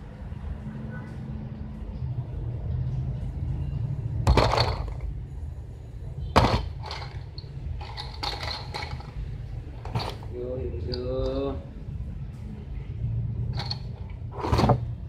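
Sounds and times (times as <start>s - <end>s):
plastic clattering: 4.3s - 5.1s, 6.4s - 10.3s, 13.5s - 15.0s.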